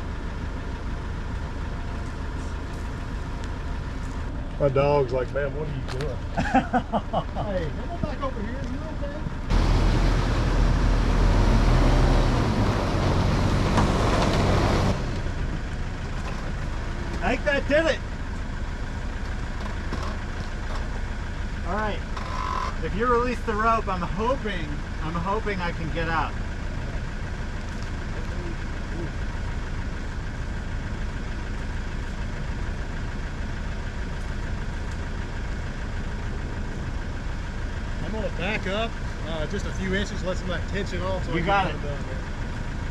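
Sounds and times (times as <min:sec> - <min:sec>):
vehicle engine running hard: 0:00.0 - 0:42.9.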